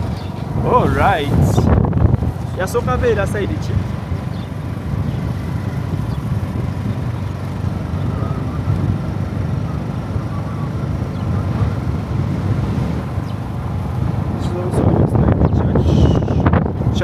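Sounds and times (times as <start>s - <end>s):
road noise: 0.0s - 17.0s
vehicle engine rumble: 0.0s - 17.0s.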